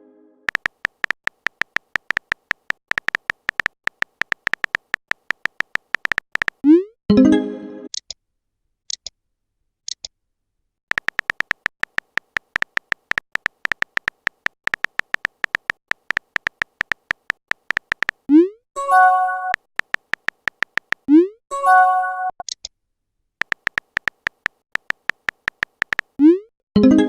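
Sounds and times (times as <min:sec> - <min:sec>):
rapid electronic blips: 0:10.9 - 0:18.6.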